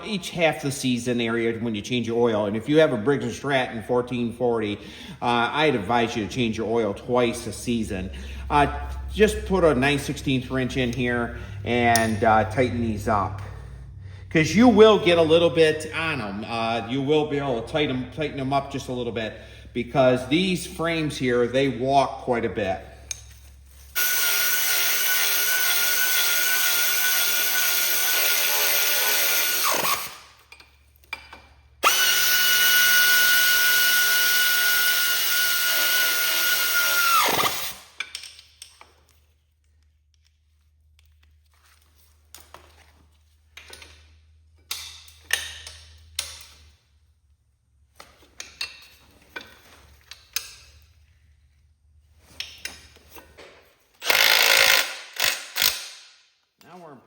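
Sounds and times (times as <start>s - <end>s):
cordless drill spinning: 23.9s - 30.2s, 31.8s - 38.0s, 54.0s - 55.8s.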